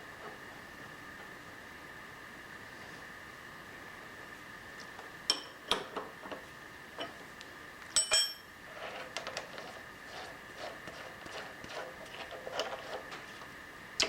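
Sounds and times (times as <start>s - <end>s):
metallic clinks of steel tooling: 8.0s - 8.5s.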